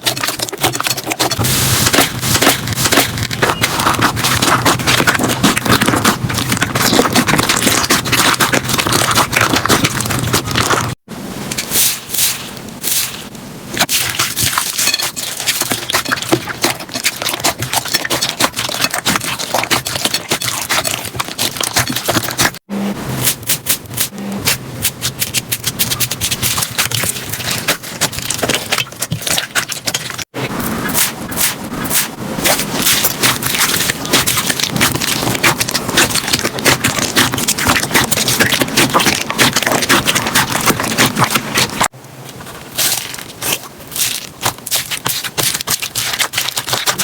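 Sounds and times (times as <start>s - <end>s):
slime crackling and popping: 0.0s - 11.1s, 12.9s - 22.6s, 30.9s - 41.9s, 42.7s - 47.0s.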